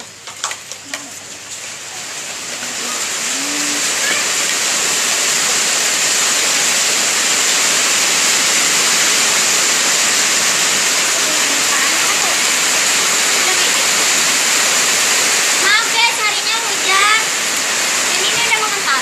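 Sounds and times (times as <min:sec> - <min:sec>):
heavy rain: 0:00.0 - 0:19.0.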